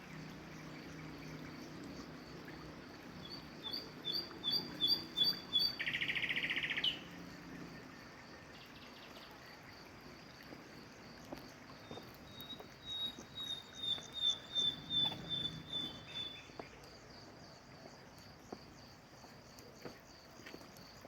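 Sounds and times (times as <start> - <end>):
insect chirping: 0.0 - 21.0
night bird calling: 3.2 - 7.1, 12.3 - 16.8.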